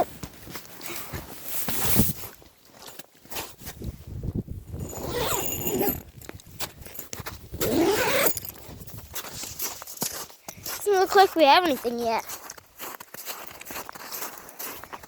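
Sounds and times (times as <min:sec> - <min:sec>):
footsteps crunching in snow: 0:00.0 - 0:15.0
squealing scuffs in snow: 0:01.0 - 0:02.4.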